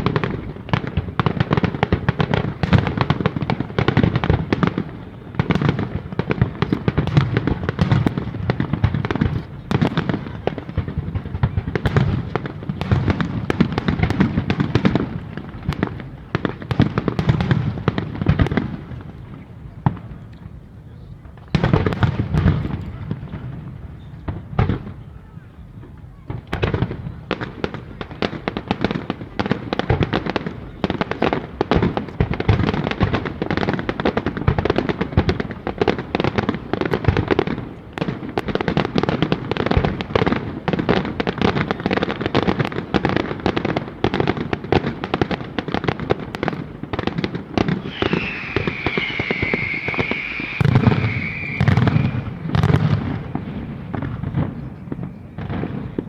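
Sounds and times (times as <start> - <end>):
heavy firework booms: 0.0 - 20.2, 21.3 - 56.0
fireworks bangs and crackling: 0.0 - 56.0
high firework whistle: 47.7 - 53.4.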